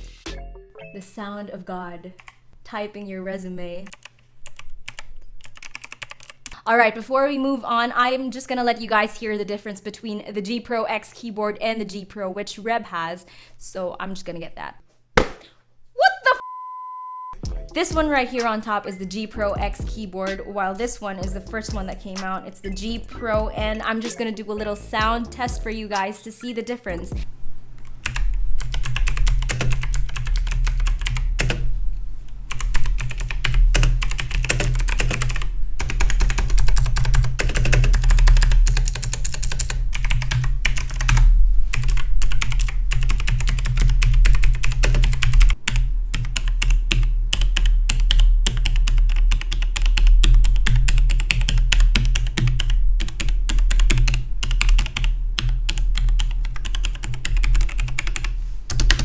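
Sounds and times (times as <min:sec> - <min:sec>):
mechanical keyboard typing: 0:03.9 - 0:06.6, 0:28.0 - 0:31.6, 0:32.5 - 0:59.0.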